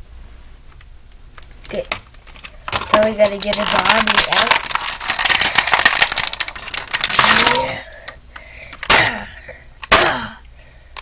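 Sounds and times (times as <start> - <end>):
plastic packaging crackling and clicking: 1.4 - 9.0.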